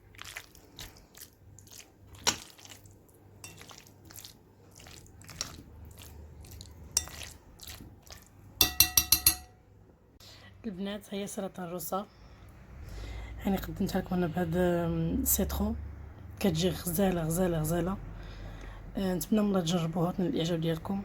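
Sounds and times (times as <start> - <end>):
dishes and utensils clinking: 8.6 - 9.6
sharp ringing clinks: 8.6 - 9.6.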